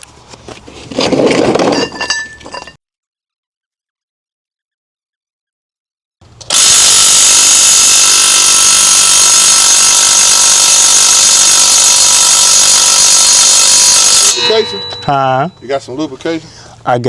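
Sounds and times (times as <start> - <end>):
impact wrench running: 6.3 - 15.1.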